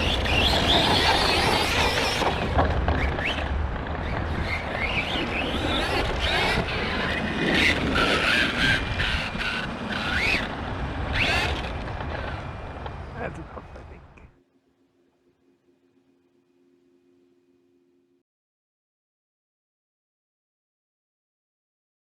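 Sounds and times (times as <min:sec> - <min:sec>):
rc truck motor whine: 0:00.0 - 0:13.1.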